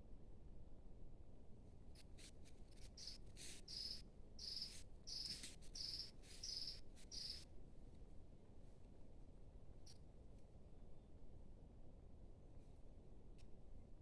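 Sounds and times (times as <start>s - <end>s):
faint low background noise: 0.0s - 14.0s
insect chirping: 3.0s - 7.4s.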